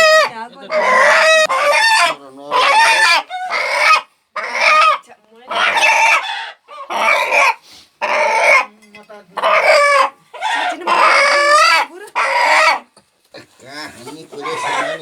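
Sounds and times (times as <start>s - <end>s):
rooster crowing: 0.0s - 5.0s, 14.4s - 15.0s.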